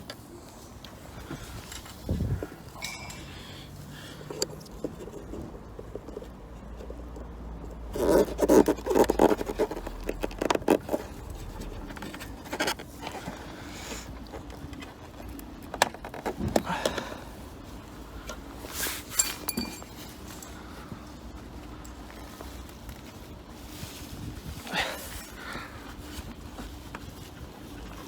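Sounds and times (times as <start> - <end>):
tools scraping and knocking: 1.3 - 3.4, 19.0 - 20.5.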